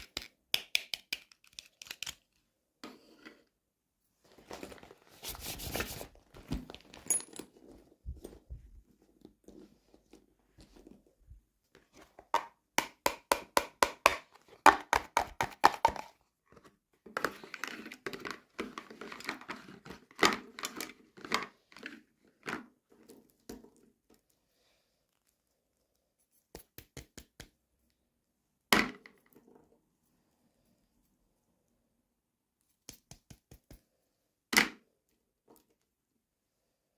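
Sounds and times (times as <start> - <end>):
quick clicks and taps: 32.8 - 33.9.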